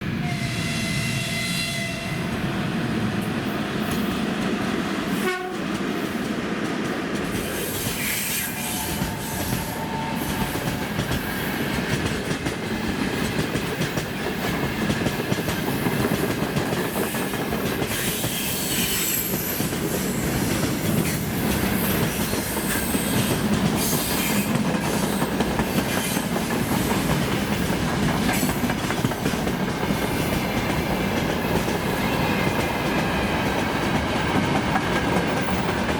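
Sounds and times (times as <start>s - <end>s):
locomotive horn: 0.1s - 2.2s, 5.1s - 5.7s
train wheels clattering over rail joints: 5.6s - 33.0s.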